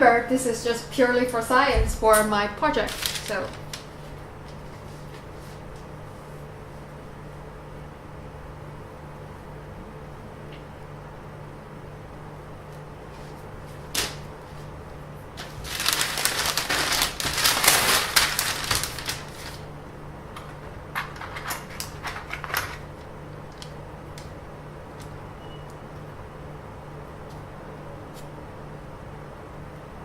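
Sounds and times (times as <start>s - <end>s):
steady low hum: 0.0s - 30.0s
rustling and crinkling: 2.8s - 6.4s, 12.7s - 19.8s, 20.4s - 24.3s
objects clicking and tapping: 20.4s - 22.9s.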